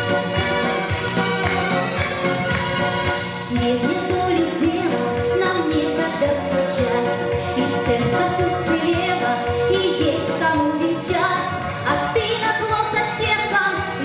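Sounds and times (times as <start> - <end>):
pop song with vocals: 2.9 - 14.0.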